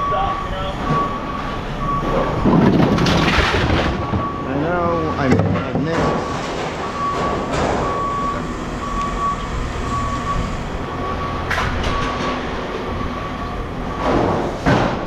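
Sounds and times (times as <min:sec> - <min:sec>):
heavy machinery rumbling: 0:00.0 - 0:15.0
reversing alarm beeping: 0:00.0 - 0:15.0.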